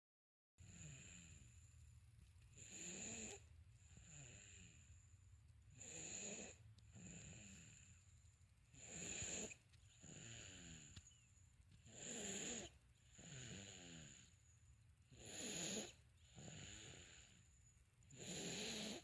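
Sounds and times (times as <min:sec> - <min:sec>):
person snoring: 0:00.6 - 0:01.5, 0:02.6 - 0:04.8, 0:08.7 - 0:11.0, 0:11.8 - 0:14.4, 0:15.1 - 0:17.4, 0:18.1 - 0:19.0.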